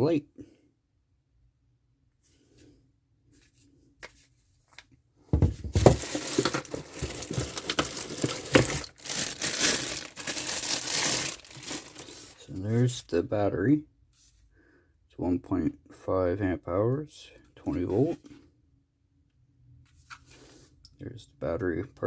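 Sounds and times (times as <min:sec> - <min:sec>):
packaging crackling and tearing: 0:05.8 - 0:12.4.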